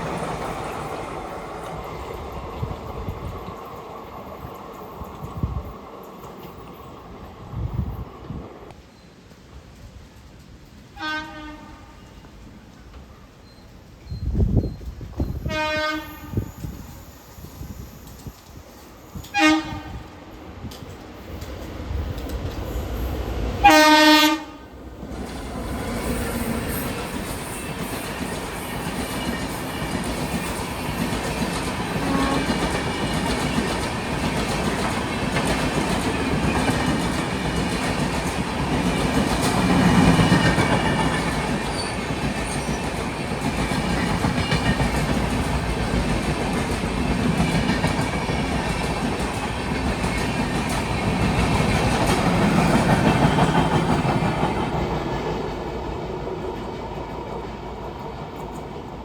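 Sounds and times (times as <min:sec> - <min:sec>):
train cars rumbling: 0:00.0 - 0:08.7, 0:12.4 - 0:59.0
train wheels clickety-clack: 0:00.0 - 0:11.0, 0:25.0 - 0:59.0.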